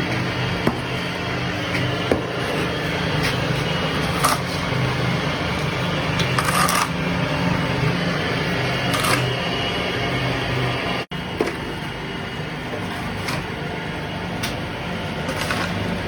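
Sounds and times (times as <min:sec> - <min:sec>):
machine motor humming: 0:00.0 - 0:12.8.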